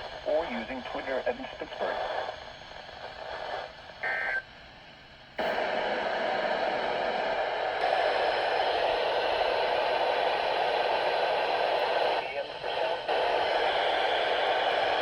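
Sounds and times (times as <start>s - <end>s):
radio static hiss: 0.0s - 4.5s
broadcast voice: 0.3s - 2.1s.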